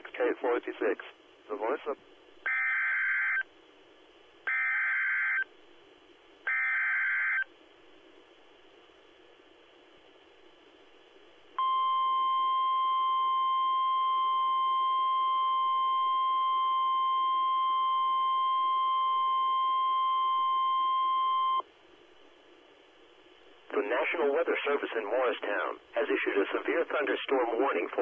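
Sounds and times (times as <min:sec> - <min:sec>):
faint radio hiss: 0:00.0 - 0:28.0
steady high alarm beep: 0:04.5 - 0:05.4, 0:06.5 - 0:07.4, 0:11.6 - 0:21.6.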